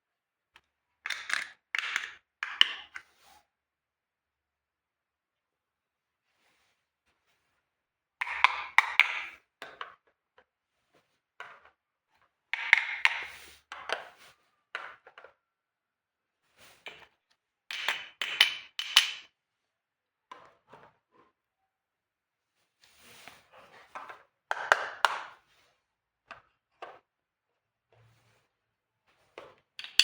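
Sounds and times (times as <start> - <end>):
plastic toy pieces clicking: 1.1 - 3.0, 8.2 - 9.3, 29.8 - 30.0.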